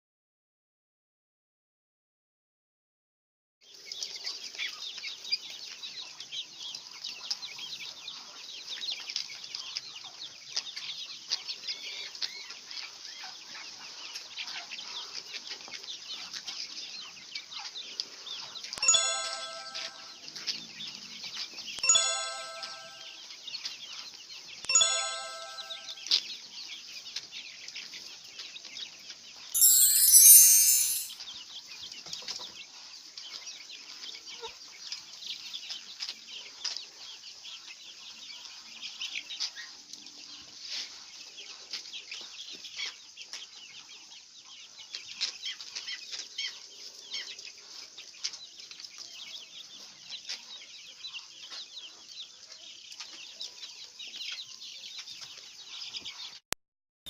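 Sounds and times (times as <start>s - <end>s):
chickens clucking and peeping: 3.7s - 20.2s, 32.4s - 56.4s.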